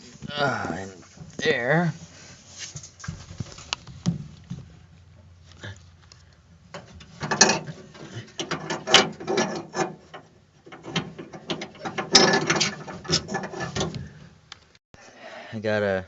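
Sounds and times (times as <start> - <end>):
metallic clicking and ratcheting of latch: 6.1 - 14.1.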